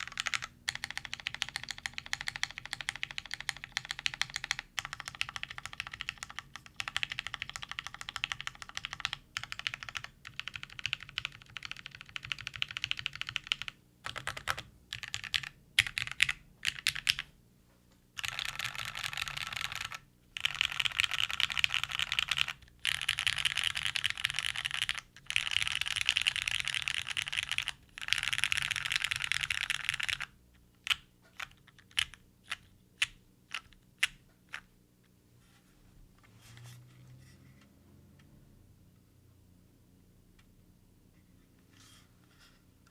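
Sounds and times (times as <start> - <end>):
mechanical keyboard typing: 0.0 - 17.3, 18.2 - 34.6.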